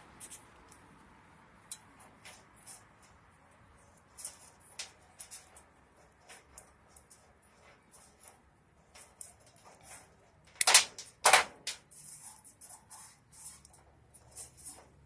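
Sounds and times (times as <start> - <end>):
arc welder crackling: 4.2 - 12.0.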